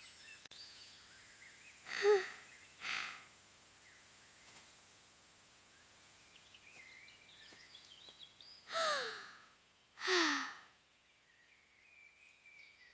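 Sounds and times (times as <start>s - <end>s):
cartoon voice breathy sighs: 8.7s - 9.4s, 10.0s - 10.6s.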